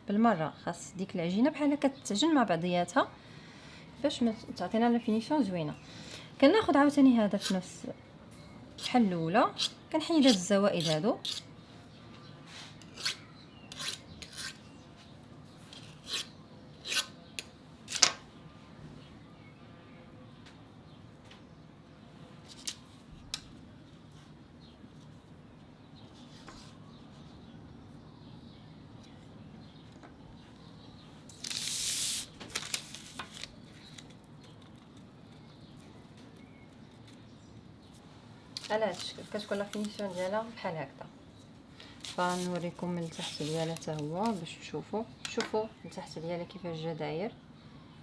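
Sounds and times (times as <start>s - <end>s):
pastry scraping on metal ring: 7.3s - 7.7s, 8.8s - 11.5s, 12.6s - 14.7s, 15.6s - 17.2s
dough scraping strokes: 9.6s - 11.5s, 42.0s - 44.4s.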